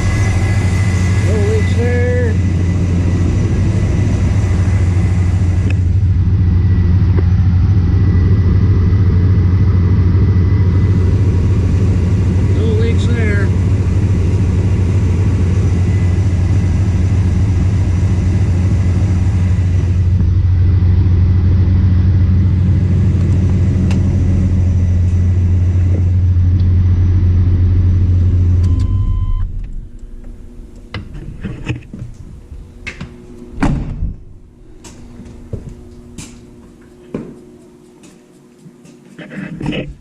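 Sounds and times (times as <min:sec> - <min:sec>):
truck engine idling: 0:00.0 - 0:31.5.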